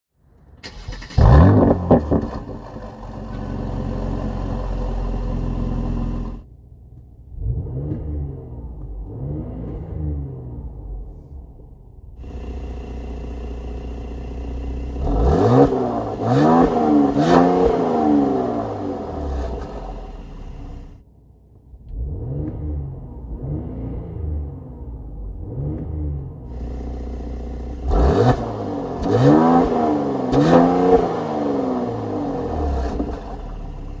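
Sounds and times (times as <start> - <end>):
car engine revving: 0.6 - 6.4, 7.2 - 21.0, 21.8 - 34.0
exhaust pop: 0.7 - 21.0, 25.3 - 34.0.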